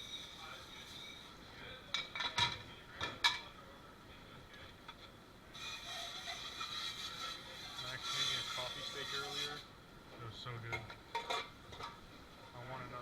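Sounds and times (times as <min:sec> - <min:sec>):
kitchen background hum: 0:00.0 - 0:13.0
dishes and utensils clattering: 0:01.9 - 0:03.5, 0:10.7 - 0:12.0.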